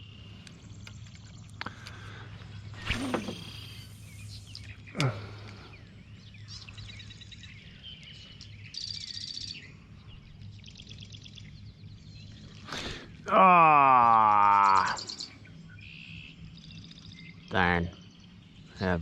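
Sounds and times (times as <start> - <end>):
songbirds trilling: 0.0 - 19.0
steady low hum: 0.0 - 19.0
falling swish: 2.8 - 4.4.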